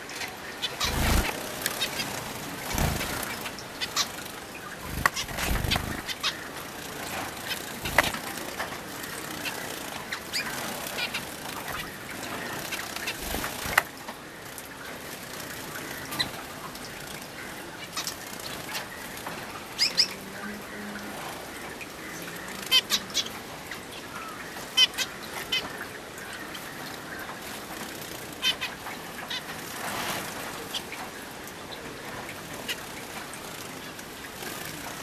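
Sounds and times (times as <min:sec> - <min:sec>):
water splashing: 0:00.1 - 0:14.0
wings fluttering: 0:00.1 - 0:14.0.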